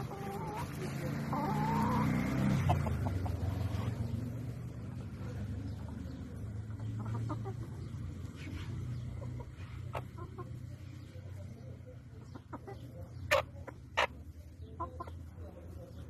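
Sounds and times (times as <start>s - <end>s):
loud chicken calls: 0.0s - 3.3s
chickens clucking and peeping: 0.0s - 16.0s.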